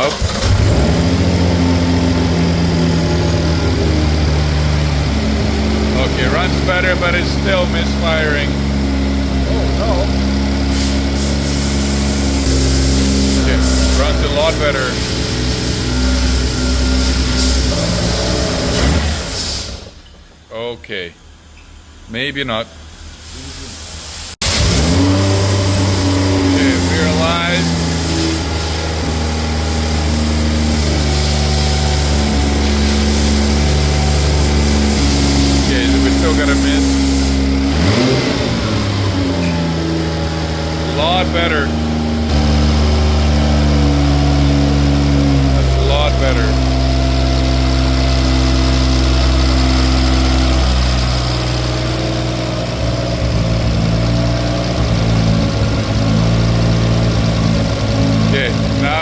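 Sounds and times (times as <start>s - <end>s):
misfiring engine running: 0.0s - 20.3s, 24.4s - 59.0s.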